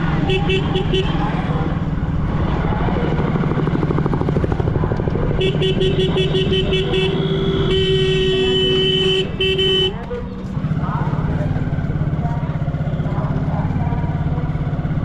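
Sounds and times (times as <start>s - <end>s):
motorcycle engine running: 0.0s - 15.0s
vehicle horn beeping: 0.2s - 1.2s, 5.4s - 10.2s.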